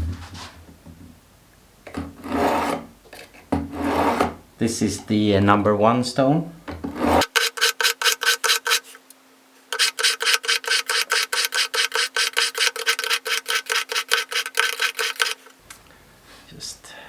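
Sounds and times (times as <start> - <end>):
knife scraping on sharpening stone: 7.0 - 9.0, 9.7 - 15.5.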